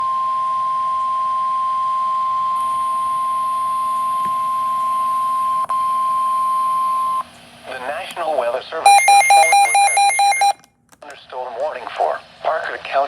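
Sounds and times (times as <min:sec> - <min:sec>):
steady high-pitched alarm tone: 0:08.9 - 0:10.6.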